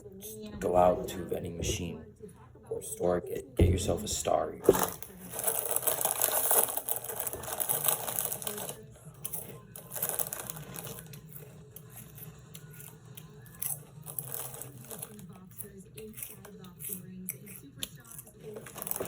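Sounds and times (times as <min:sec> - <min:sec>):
snack packaging tearing and rustling: 0:04.7 - 0:08.9, 0:09.8 - 0:19.0.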